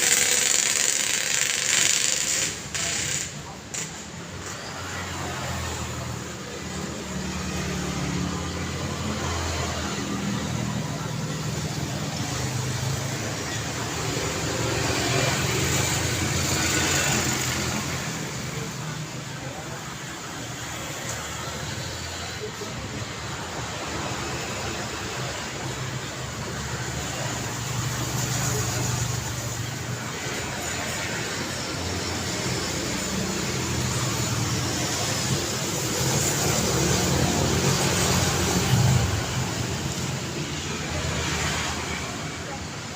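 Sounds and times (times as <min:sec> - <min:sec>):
cars and motorbikes passing: 0:00.0 - 0:42.9.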